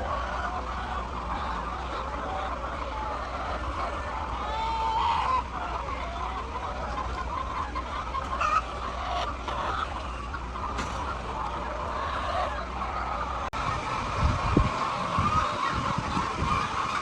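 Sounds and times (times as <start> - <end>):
hens clucking: 0.0 - 17.0
low steady hum: 0.0 - 17.0.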